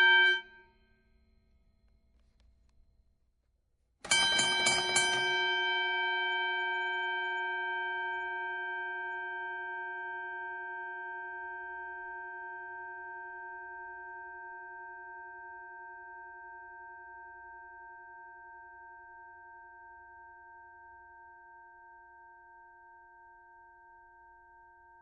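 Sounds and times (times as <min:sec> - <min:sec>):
boxing ring bell ringing: 0:04.1 - 0:06.5.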